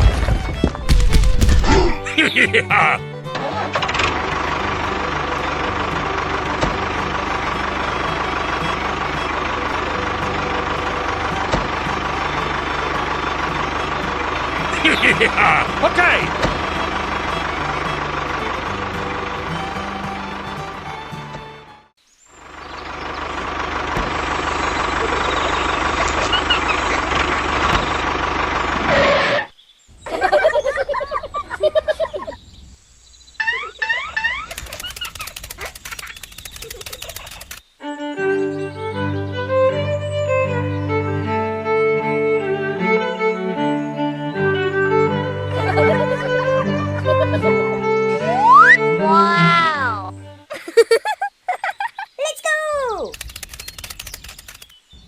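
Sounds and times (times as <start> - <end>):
small tractor motor running: 3.0 - 21.7, 22.4 - 29.5, 34.4 - 37.7, 53.0 - 54.8
short clicks: 34.4 - 37.7, 53.0 - 54.8.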